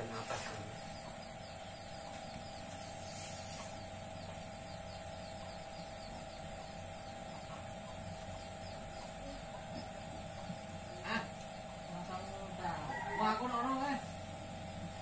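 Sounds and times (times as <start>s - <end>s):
steady background hum: 0.0s - 15.0s
soft hiss or rustle: 2.8s - 3.8s.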